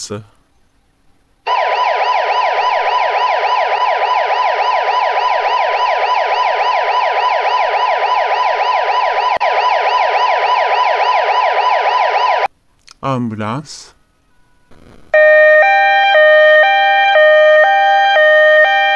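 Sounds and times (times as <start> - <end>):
police siren yelping: 1.5 - 12.5, 15.1 - 18.9.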